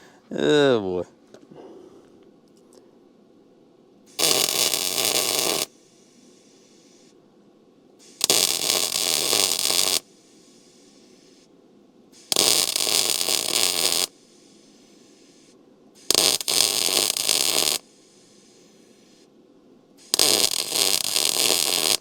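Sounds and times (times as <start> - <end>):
welding arc crackling: 4.1 - 5.7, 8.0 - 10.1, 12.2 - 17.9, 20.0 - 22.0.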